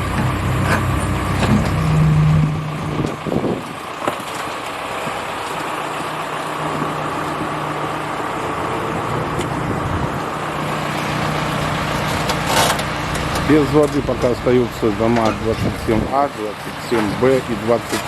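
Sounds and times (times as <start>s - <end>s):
motor engine running: 5.0s - 18.0s.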